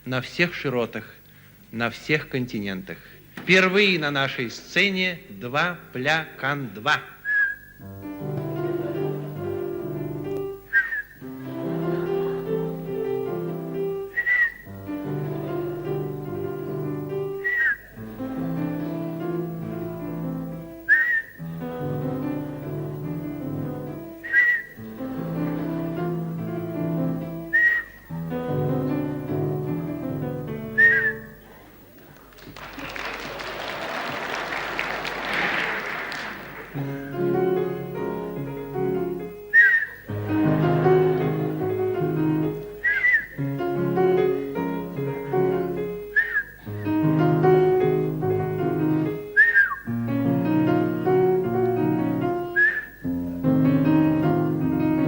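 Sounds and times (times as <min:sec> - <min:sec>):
sharp human whistle: 0:07.2 - 0:07.9, 0:10.6 - 0:11.3, 0:14.1 - 0:14.8, 0:17.3 - 0:18.0, 0:20.9 - 0:21.5, 0:24.2 - 0:24.9, 0:27.4 - 0:28.1, 0:30.7 - 0:31.4, 0:39.5 - 0:40.1, 0:42.8 - 0:43.4, 0:46.1 - 0:46.9, 0:49.3 - 0:50.0, 0:52.4 - 0:53.1
instrumental music held notes: 0:07.8 - 0:31.6, 0:36.7 - 0:55.0
audience applause: 0:08.1 - 0:10.6, 0:11.2 - 0:17.0, 0:24.9 - 0:27.3, 0:31.4 - 0:38.5, 0:40.0 - 0:43.2.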